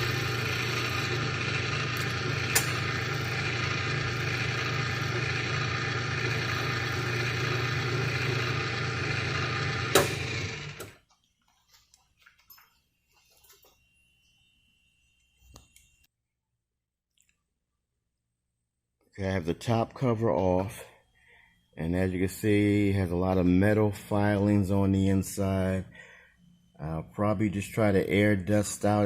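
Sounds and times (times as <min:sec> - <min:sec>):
key duplicator motor humming: 0:00.0 - 0:11.0
sharp click: 0:02.0 - 0:02.8.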